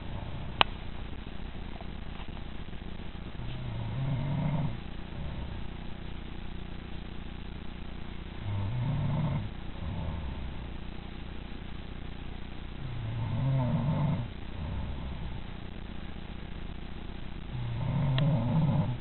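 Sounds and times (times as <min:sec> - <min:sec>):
woman snoring: 0:00.0 - 0:00.6, 0:03.4 - 0:05.7, 0:08.4 - 0:10.7, 0:12.8 - 0:15.5, 0:17.5 - 0:19.0.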